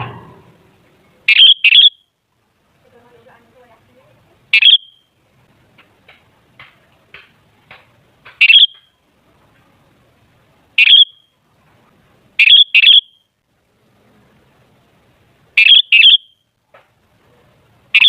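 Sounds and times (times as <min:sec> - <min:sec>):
bird sharp calls: 0:01.3 - 0:02.0, 0:04.5 - 0:05.0, 0:08.4 - 0:08.9, 0:10.8 - 0:11.2, 0:12.4 - 0:13.2, 0:15.6 - 0:16.3.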